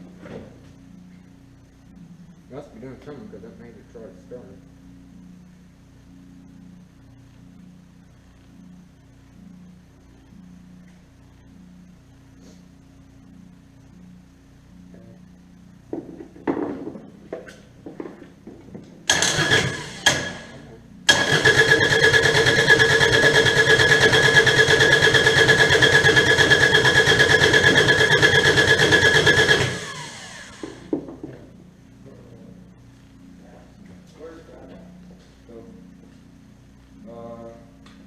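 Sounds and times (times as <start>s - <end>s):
diesel engine cranking with whine: 19.1s - 30.9s
engine clanks: 19.1s - 30.9s.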